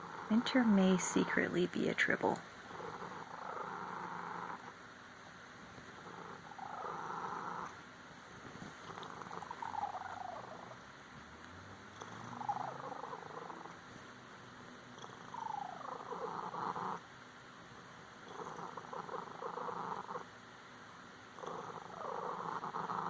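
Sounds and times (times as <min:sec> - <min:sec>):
cat purring trills: 0:00.0 - 0:04.9, 0:05.6 - 0:14.1, 0:14.8 - 0:20.4, 0:21.2 - 0:23.0.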